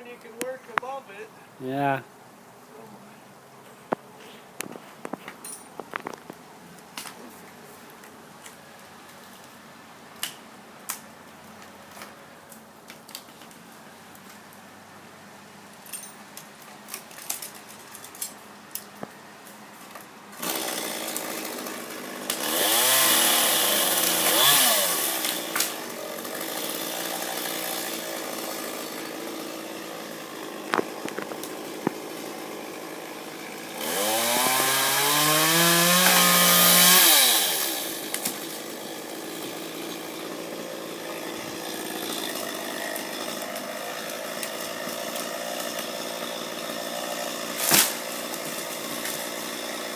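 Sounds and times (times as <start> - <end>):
chainsaw engine idling and revving: 20.4 - 49.9.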